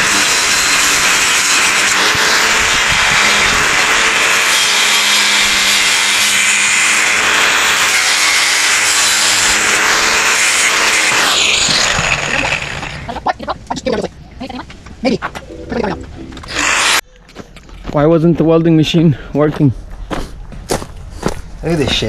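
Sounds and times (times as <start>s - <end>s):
motor winding down: 0.0s - 13.1s, 16.5s - 17.0s
power metal cutter cutting metal: 0.0s - 13.1s, 16.5s - 17.0s.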